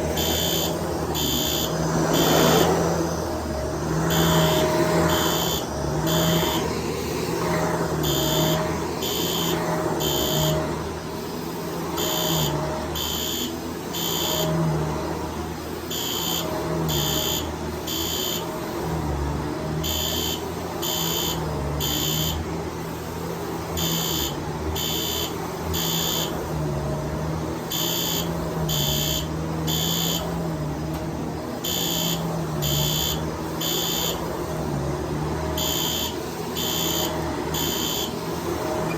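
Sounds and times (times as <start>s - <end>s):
fire alarm horn beeping: 0.0s - 2.8s, 3.9s - 6.7s, 8.0s - 10.8s, 11.9s - 14.8s, 15.9s - 18.6s, 19.8s - 22.5s, 23.7s - 26.6s, 27.6s - 30.6s, 31.6s - 34.3s, 35.5s - 38.8s
vacuum cleaner running: 0.0s - 38.9s.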